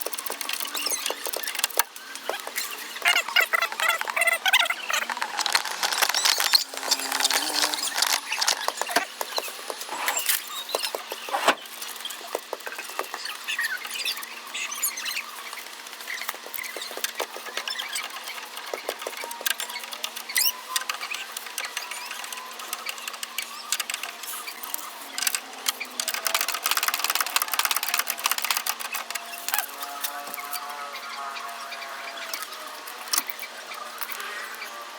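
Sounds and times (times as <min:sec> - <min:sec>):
hand tools clicking and tapping: 0:00.0 - 0:11.5
short squeaks: 0:02.3 - 0:11.6.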